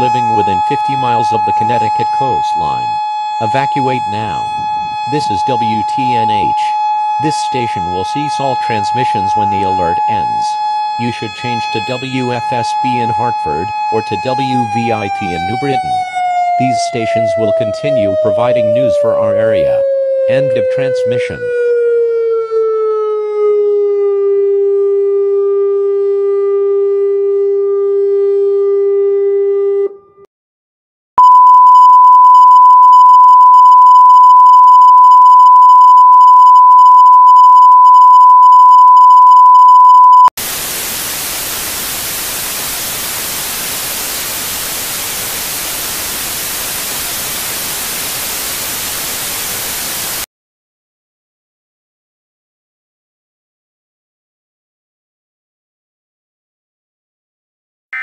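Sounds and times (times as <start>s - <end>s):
steady test tone: 0.0s - 10.3s
siren tone sliding down: 0.0s - 29.6s
static hiss: 40.4s - 50.3s.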